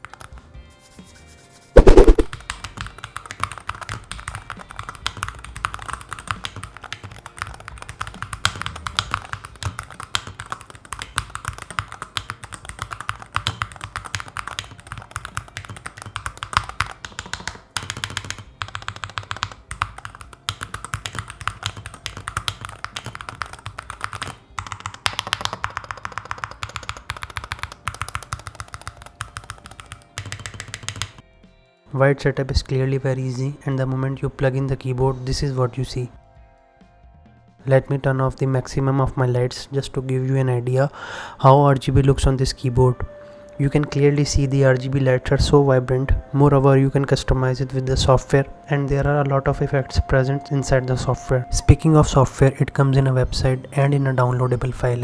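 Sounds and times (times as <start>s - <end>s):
fast keyboard typing: 0.0s - 0.5s, 1.8s - 31.2s, 49.8s - 55.0s.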